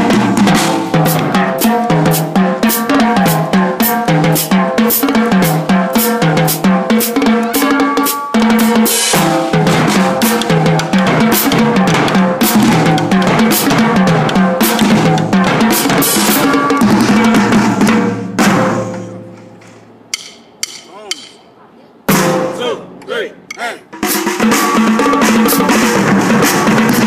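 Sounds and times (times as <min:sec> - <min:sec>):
snare drum strokes and rimshots: 0:00.0 - 0:21.5, 0:23.5 - 0:27.0
tuned drums: 0:00.0 - 0:21.5.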